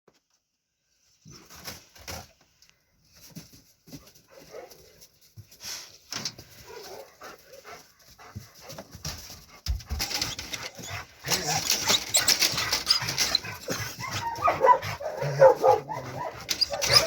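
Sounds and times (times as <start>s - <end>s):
dogs whining and whimpering: 10.1s - 17.0s.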